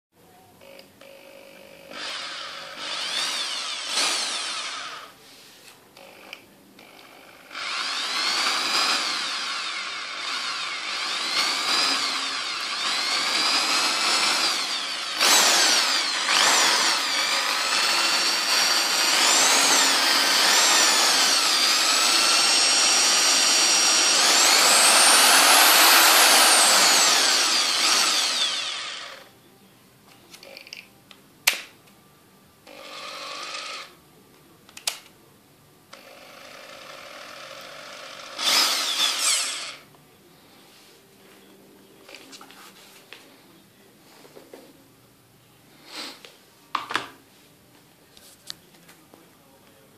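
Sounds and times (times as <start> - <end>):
impact drill motor whining: 1.8 - 5.1, 6.0 - 29.3, 32.7 - 33.9, 36.0 - 39.8.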